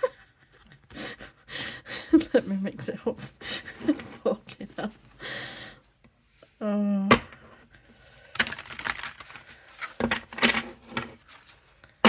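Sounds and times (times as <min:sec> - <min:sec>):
cards being shuffled: 0:08.4 - 0:12.0.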